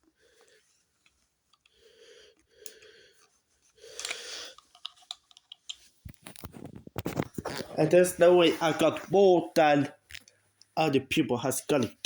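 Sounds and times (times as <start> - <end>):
breaths close to microphone: 1.7 - 4.8
handling clicks and taps: 4.0 - 6.6.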